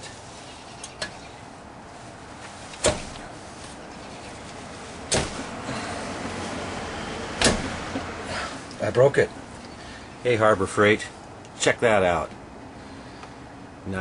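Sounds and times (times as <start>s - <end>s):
sharp knocks: 2.8s - 3.3s, 5.1s - 5.6s, 7.4s - 8.1s.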